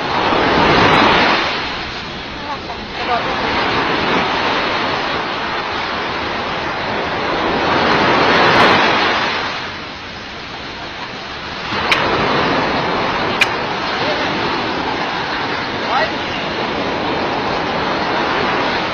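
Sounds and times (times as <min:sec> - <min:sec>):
surf washing on a beach: 0:00.0 - 0:18.9
sharp click: 0:11.8 - 0:12.1, 0:13.4 - 0:13.6.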